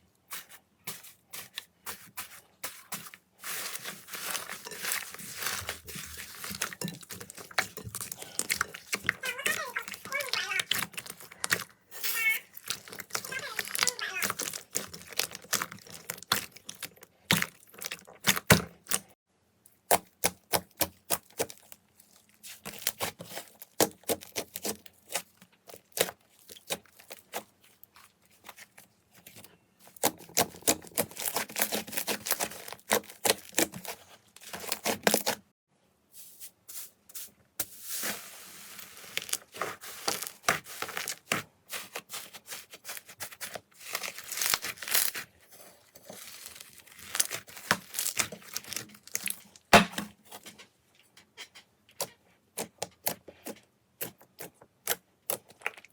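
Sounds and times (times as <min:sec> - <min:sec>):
slime crackling and popping: 0:04.1 - 0:19.1, 0:30.0 - 0:33.9, 0:42.5 - 0:45.3, 0:46.1 - 0:49.8.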